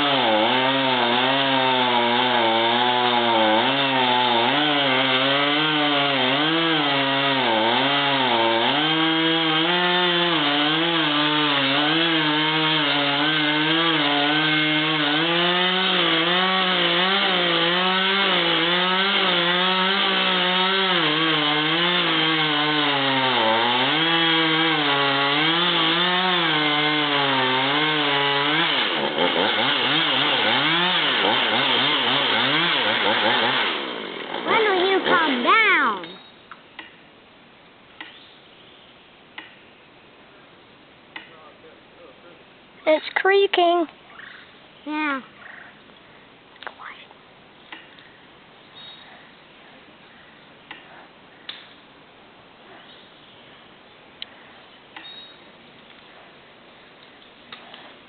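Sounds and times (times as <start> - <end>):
chainsaw cutting wood: 0.0 - 36.2.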